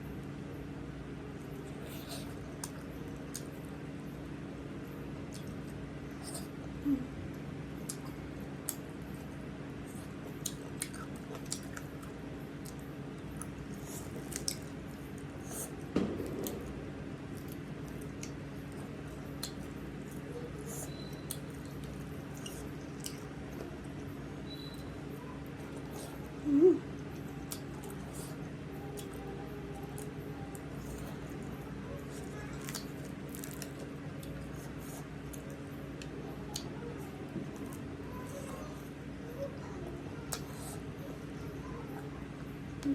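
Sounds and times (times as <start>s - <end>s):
steady low hum: 0.0s - 42.9s
wet chewing: 9.9s - 16.6s, 17.3s - 24.0s, 32.0s - 36.7s
soft thump: 15.9s - 16.8s.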